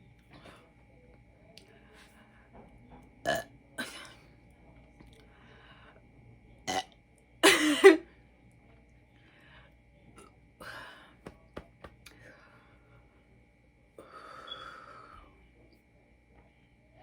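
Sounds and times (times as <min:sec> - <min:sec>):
woman burping: 0:03.3 - 0:04.1, 0:06.7 - 0:08.0.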